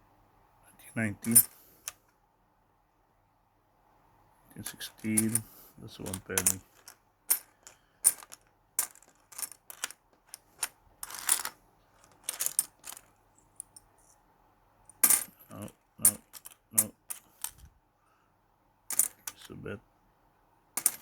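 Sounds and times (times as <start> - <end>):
coins clinking: 1.2 - 1.6, 5.0 - 13.8, 15.0 - 17.6, 18.9 - 19.5, 20.8 - 21.0
coins rustling: 1.2 - 2.0, 4.9 - 13.8, 15.0 - 17.7, 18.9 - 19.5, 20.8 - 21.0.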